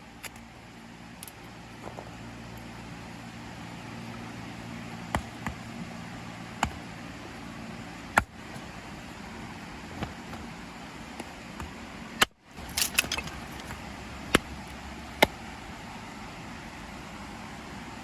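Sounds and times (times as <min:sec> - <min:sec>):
metallic clicks of camp gear: 0:00.2 - 0:00.5, 0:01.2 - 0:02.7, 0:12.6 - 0:13.8.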